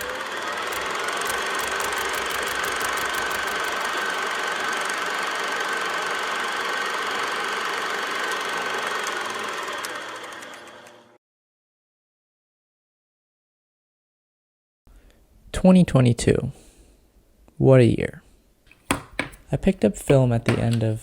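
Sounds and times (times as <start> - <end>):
rapid ticking: 0.0 - 4.4
machine whining: 0.0 - 11.2.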